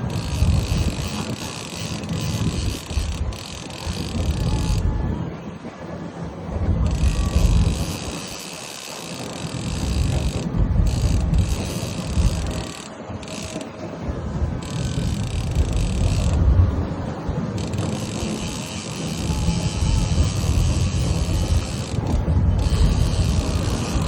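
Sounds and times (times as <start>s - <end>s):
fishing reel ratchet clicking: 0.0s - 4.8s, 6.9s - 13.7s, 14.6s - 16.4s, 17.6s - 24.0s
steady low rumble: 9.5s - 24.0s.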